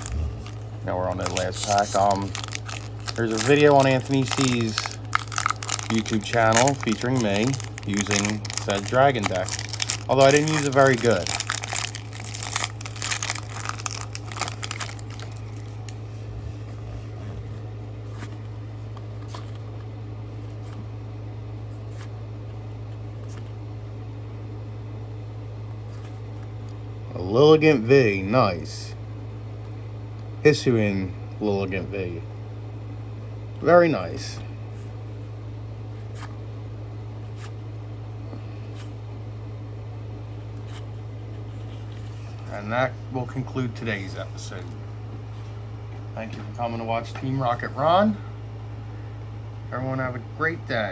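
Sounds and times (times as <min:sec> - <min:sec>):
foil wrapper crinkling: 0:00.0 - 0:16.0
steady low hum: 0:00.0 - 0:50.9.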